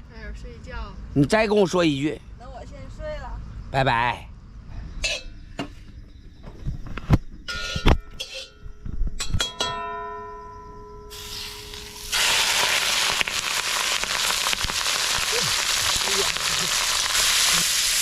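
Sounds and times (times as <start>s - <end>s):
ringing chime-like tone: 7.5s - 11.2s
food sizzling in a pan: 11.1s - 18.0s.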